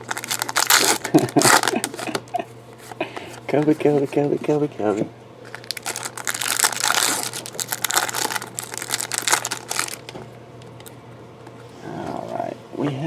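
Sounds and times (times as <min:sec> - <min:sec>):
plastic wrapper crinkling: 0:00.0 - 0:02.4, 0:05.4 - 0:10.2.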